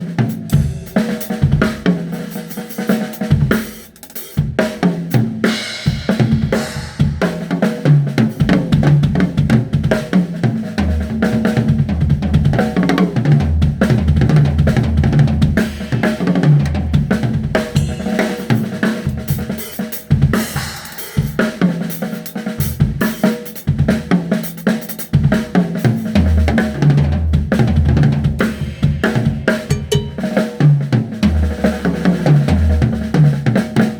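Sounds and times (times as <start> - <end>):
drum kit groove: 0.0 - 33.9
cymbal crashes: 28.6 - 30.7.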